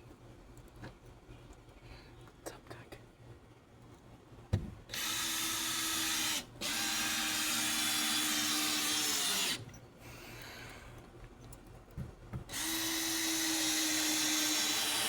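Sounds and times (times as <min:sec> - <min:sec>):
power drill driving screws into wood: 0:04.9 - 0:09.6, 0:12.5 - 0:15.0.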